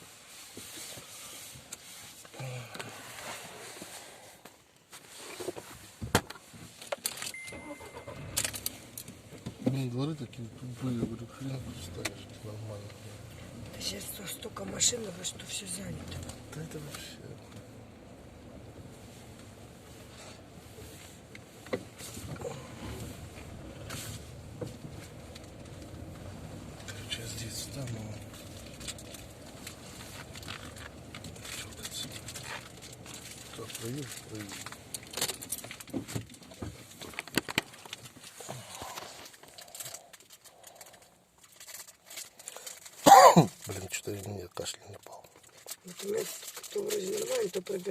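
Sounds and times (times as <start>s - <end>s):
faint rustling: 0.0s - 47.9s
car running from inside cabin: 7.3s - 39.0s
knocks and rustles: 20.1s - 40.5s.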